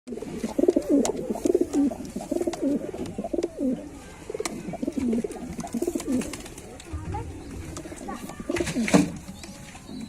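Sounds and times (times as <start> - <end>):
pigeons cooing: 0.1 - 6.6.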